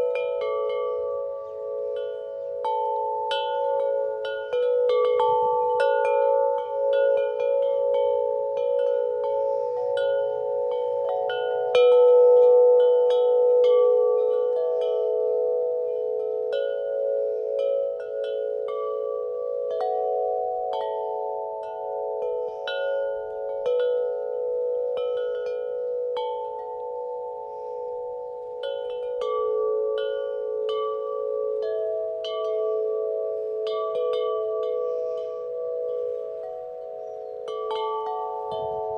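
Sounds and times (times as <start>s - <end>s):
wind chimes ringing: 0.0s - 38.9s.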